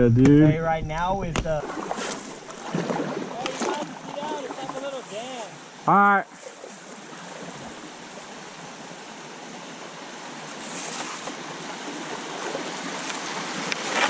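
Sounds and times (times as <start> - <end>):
water rushing over a dam: 1.6 - 9.2.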